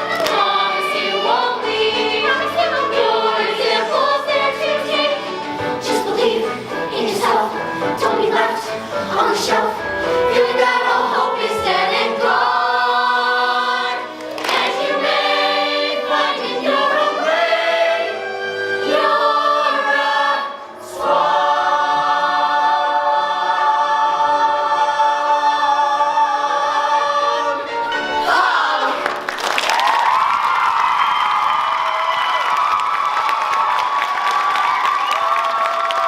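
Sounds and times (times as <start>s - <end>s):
children's chorus singing: 0.0s - 29.2s.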